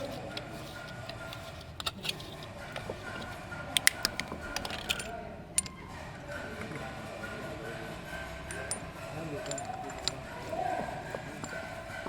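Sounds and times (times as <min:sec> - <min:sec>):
pipe fittings clicking and knocking: 0:00.0 - 0:05.8, 0:08.5 - 0:12.0.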